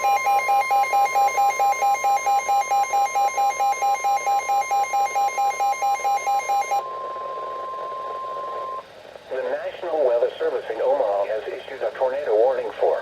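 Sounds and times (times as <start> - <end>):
fast pulsing beep: 0.0 - 8.8
steady alarm tone: 0.0 - 8.9.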